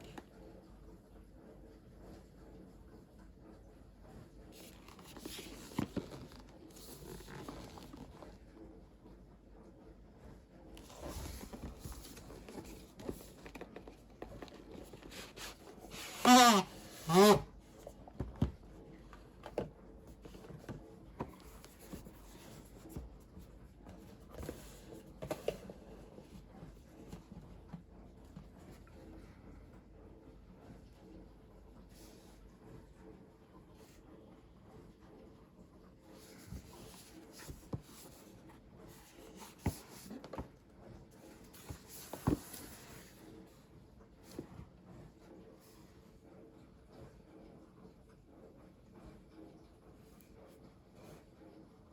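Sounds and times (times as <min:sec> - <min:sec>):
light rustling of packaging: 0:04.4 - 0:08.6, 0:10.7 - 0:29.3, 0:36.1 - 0:43.6.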